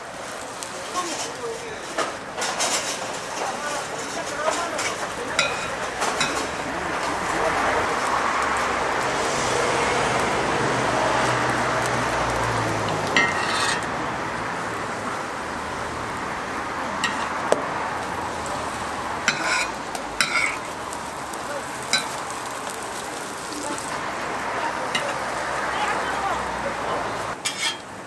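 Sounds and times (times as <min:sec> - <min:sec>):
food frying in hot oil: 0:00.0 - 0:28.0
utensil clinking and scraping pan: 0:01.1 - 0:07.2, 0:12.8 - 0:13.9, 0:17.0 - 0:17.4, 0:19.3 - 0:20.7, 0:21.9 - 0:22.2, 0:27.4 - 0:27.9.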